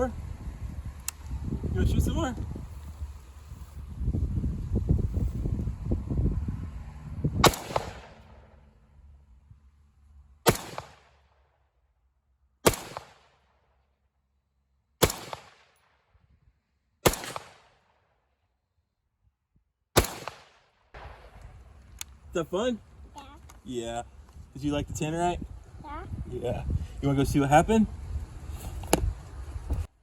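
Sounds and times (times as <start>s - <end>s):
wind rumble on microphone: 0.0s - 8.4s, 21.0s - 30.0s
rifle shots with echo: 7.4s - 8.4s, 10.5s - 11.3s, 12.6s - 13.5s, 15.0s - 16.0s, 17.0s - 18.0s, 20.0s - 21.7s.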